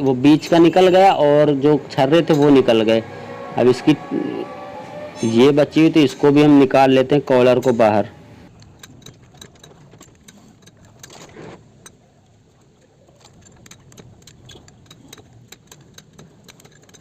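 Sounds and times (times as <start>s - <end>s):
screwdriver clicking and scraping metal: 8.5s - 12.0s, 13.2s - 17.0s.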